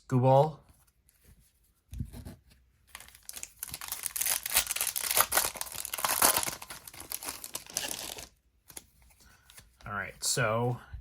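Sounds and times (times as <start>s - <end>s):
plastic wrapper crinkling and tearing: 2.8s - 8.9s.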